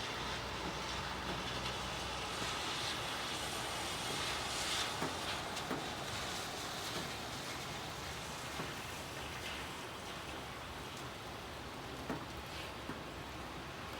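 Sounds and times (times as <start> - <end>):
steady rain: 0.0 - 13.9
vehicle tyres hissing on wet street: 0.0 - 13.9.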